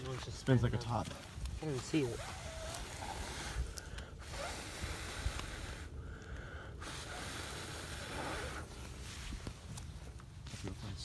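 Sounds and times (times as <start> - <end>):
spinning firework hissing: 2.0 - 6.0, 6.8 - 9.0.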